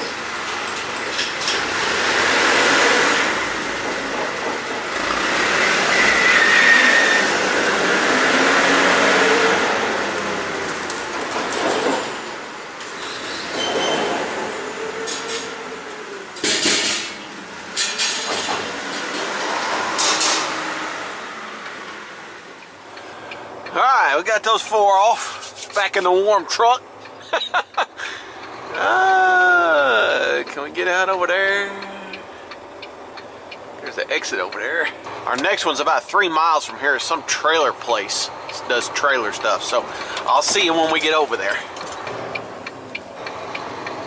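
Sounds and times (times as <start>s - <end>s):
pallet jack wheels rumbling: 0.0s - 27.5s
sharp metal clanks: 16.4s - 19.3s, 19.9s - 20.6s.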